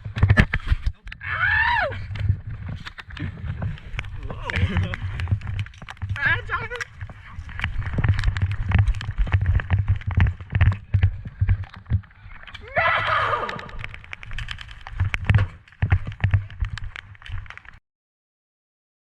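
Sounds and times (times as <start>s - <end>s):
rapid irregular thuds and clicks: 2.0s - 17.8s
high wavering yell: 12.6s - 13.8s.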